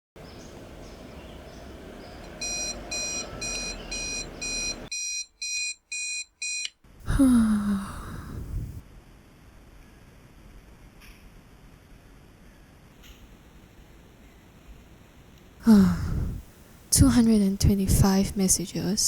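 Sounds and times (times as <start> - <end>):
electronic alarm beeping: 2.3 - 6.7.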